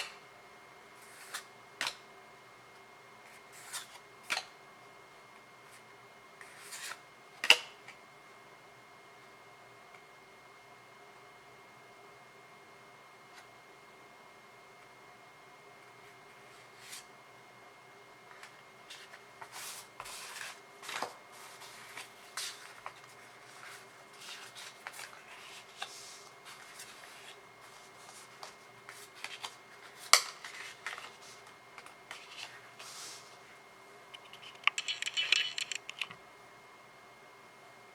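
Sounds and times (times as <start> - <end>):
crackly card handling noises: 18.3 - 33.3, 34.1 - 36.2
cards sliding and flicking: 34.2 - 36.2.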